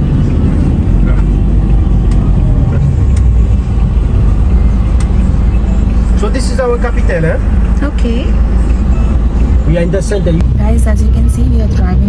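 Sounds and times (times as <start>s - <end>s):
van road and engine rumble: 0.0s - 12.0s.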